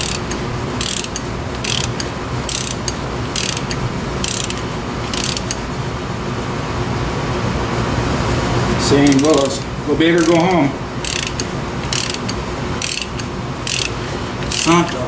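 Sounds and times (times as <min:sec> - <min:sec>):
socket ratchet clicking: 0:00.0 - 0:05.6, 0:10.2 - 0:15.0
steady low hum: 0:00.0 - 0:15.0.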